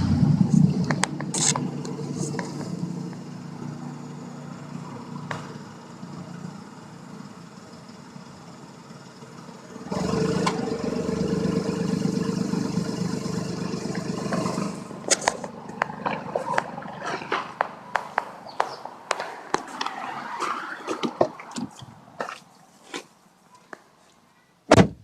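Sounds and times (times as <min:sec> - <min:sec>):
car engine idling: 0:00.0 - 0:18.8.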